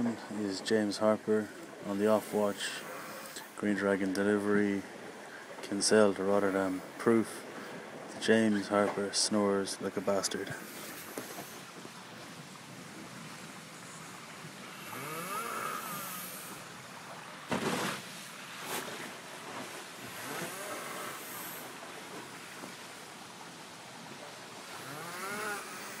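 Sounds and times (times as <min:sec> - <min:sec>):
boat rushing through water: 0:00.0 - 0:26.0
man snoring: 0:14.8 - 0:16.5, 0:24.8 - 0:26.0.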